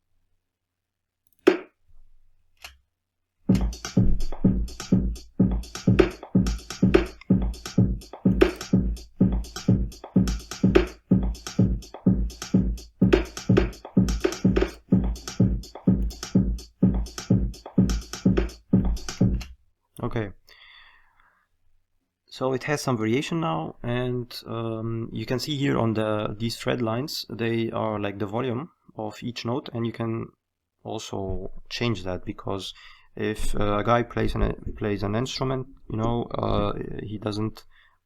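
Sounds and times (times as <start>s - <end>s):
electronic drum beat: 3.5s - 19.5s.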